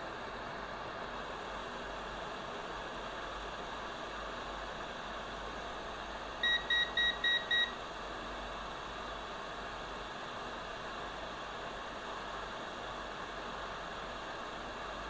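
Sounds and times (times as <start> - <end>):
short electronic beeps: 6.4 - 7.7.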